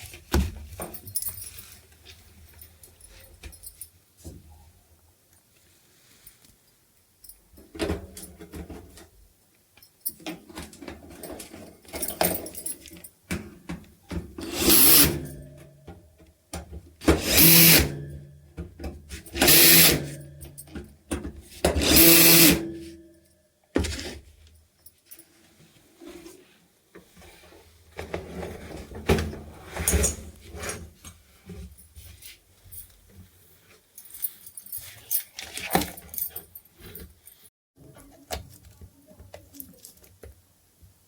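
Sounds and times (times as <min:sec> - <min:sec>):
power drill running: 0:17.2 - 0:17.8, 0:19.4 - 0:20.0, 0:21.8 - 0:22.6.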